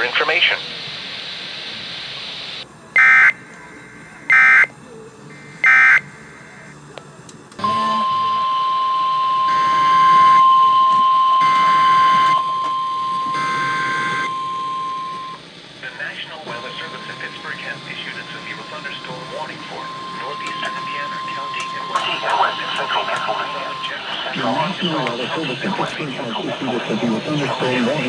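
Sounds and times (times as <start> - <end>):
steady warning alarm tone: 3.0 - 6.7, 7.6 - 28.0
digital data tone bursts: 7.6 - 15.4, 16.5 - 28.0.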